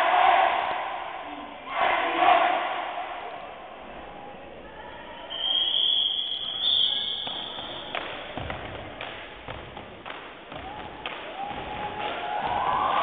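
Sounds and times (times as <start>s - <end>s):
high whistle blast: 5.2s - 8.0s
feet stomping in unison: 8.0s - 13.0s.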